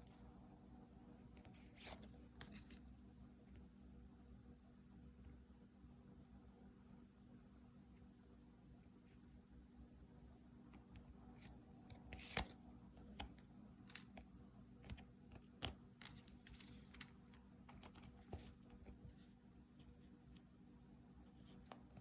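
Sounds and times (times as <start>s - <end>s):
low room hum: 0.0s - 22.0s
trading cards being handled: 1.4s - 2.9s, 11.4s - 20.5s.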